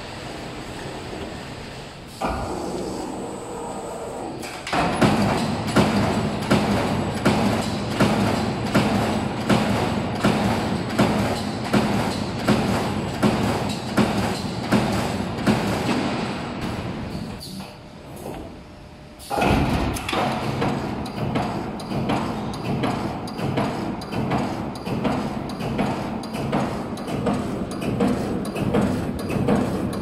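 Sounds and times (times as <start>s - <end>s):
steady machine hum: 0.0s - 30.0s
machine punching metal: 4.4s - 17.3s, 19.2s - 30.0s.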